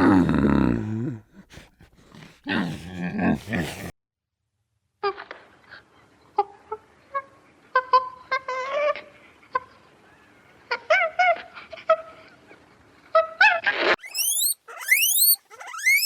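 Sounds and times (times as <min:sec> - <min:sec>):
animal giving short pitched calls: 0:14.0 - 0:16.0.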